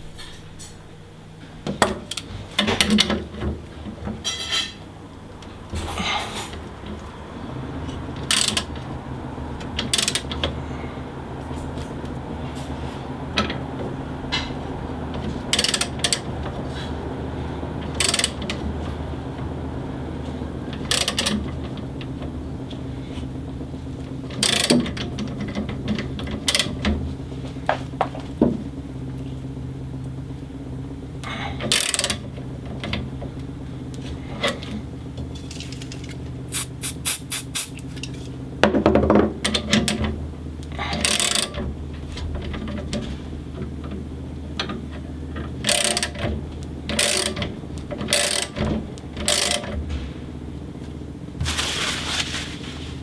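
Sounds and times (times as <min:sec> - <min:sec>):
metal tools clicking and scraping: 0:35.8 - 0:37.8.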